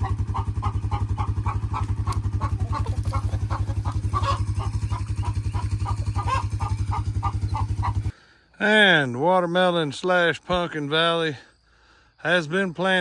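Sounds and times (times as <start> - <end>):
small engine chugging: 0.0 - 8.1.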